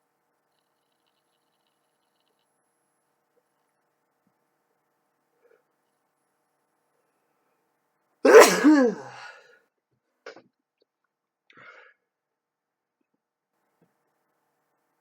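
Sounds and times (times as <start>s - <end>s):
person sneezing: 8.3s - 9.4s.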